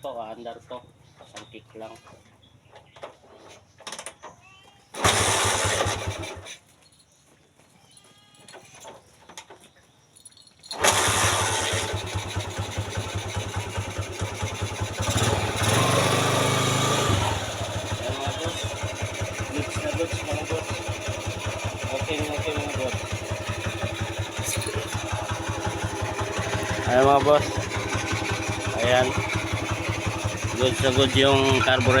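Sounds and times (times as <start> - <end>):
motorcycle engine idling and revving: 5.0 - 6.6, 10.7 - 32.0.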